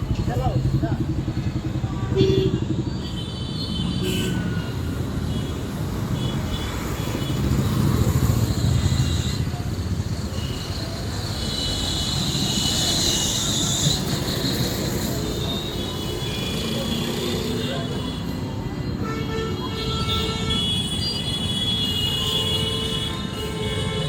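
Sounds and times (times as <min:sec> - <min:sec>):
high wheel squeals: 0:08.1 - 0:17.5.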